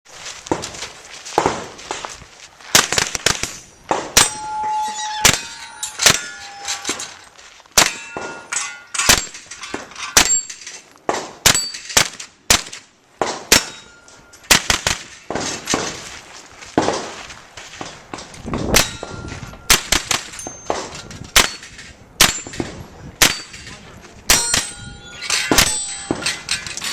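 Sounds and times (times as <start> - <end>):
steel target metallic clang: 2.9 - 10.8, 11.4 - 16.0, 18.7 - 26.9.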